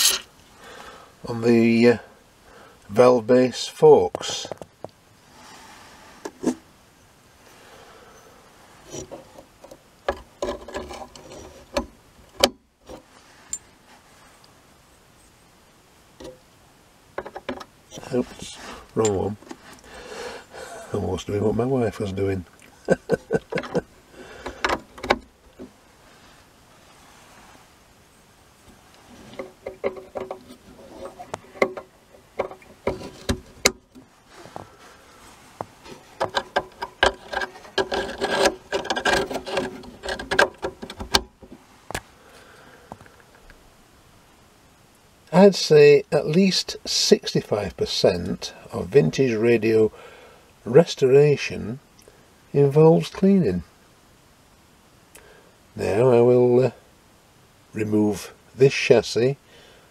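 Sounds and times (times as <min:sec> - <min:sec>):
small clicks taps and scrapes: 0:04.1 - 0:05.0, 0:08.9 - 0:13.6, 0:17.2 - 0:17.7, 0:28.6 - 0:34.7, 0:35.6 - 0:42.1.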